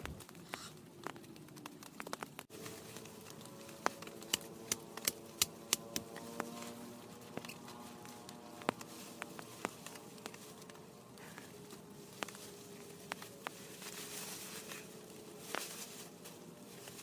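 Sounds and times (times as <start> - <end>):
soft rain patter: 0.0 - 4.4, 8.1 - 14.8.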